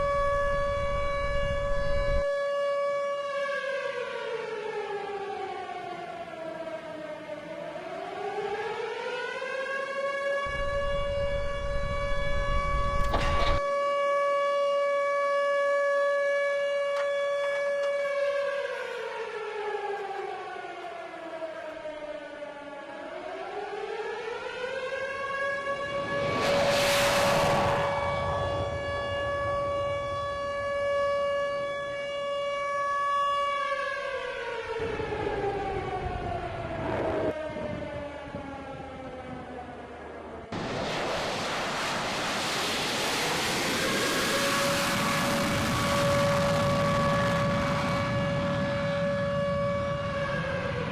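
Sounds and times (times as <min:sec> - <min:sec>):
warning siren wailing: 0:00.0 - 0:40.6, 0:44.1 - 0:50.9
low rumble: 0:25.5 - 0:31.0.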